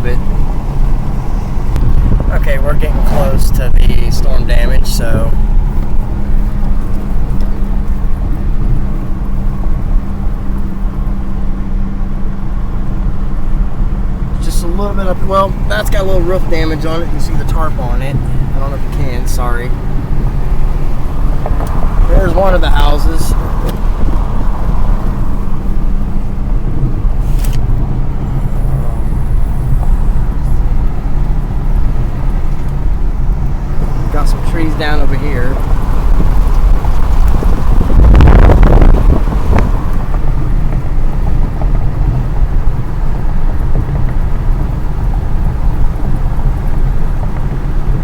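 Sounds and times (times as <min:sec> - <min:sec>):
road and engine noise in car: 0:00.0 - 0:48.0.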